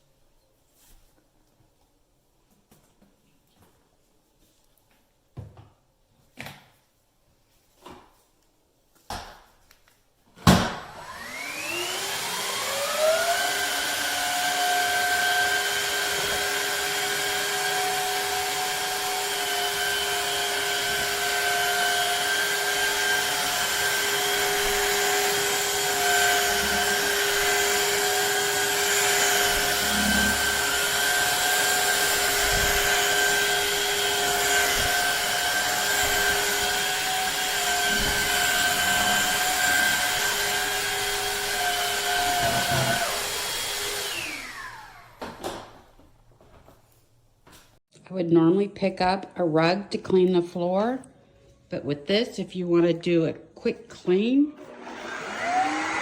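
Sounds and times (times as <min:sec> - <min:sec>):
vacuum motor whining: 0:10.6 - 0:45.4, 0:54.6 - 0:56.0.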